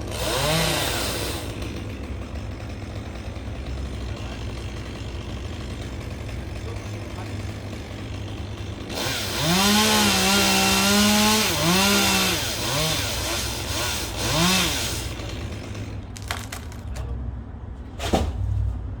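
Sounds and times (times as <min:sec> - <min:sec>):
chainsaw engine revving: 0:00.0 - 0:16.8.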